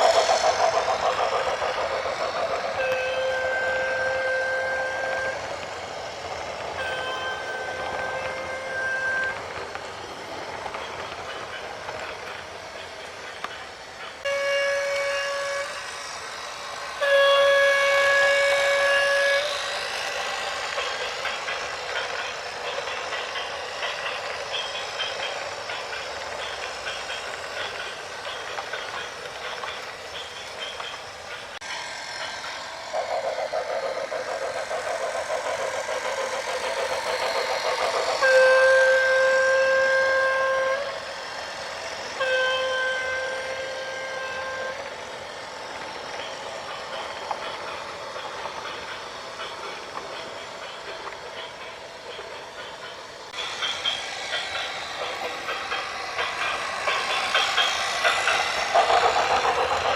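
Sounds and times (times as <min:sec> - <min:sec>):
horn blasts: 0:02.8 - 0:05.4, 0:14.2 - 0:15.9, 0:17.0 - 0:19.6, 0:38.2 - 0:40.9, 0:42.2 - 0:44.8.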